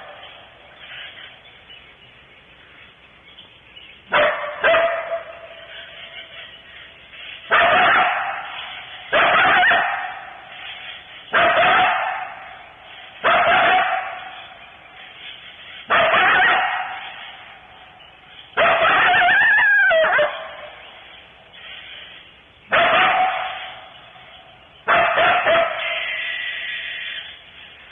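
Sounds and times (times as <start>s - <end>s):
coyotes barking: 0.0s - 1.9s, 3.9s - 27.9s
coyote bark-howl: 4.1s - 6.6s, 7.2s - 18.0s, 18.6s - 21.2s, 22.7s - 27.4s.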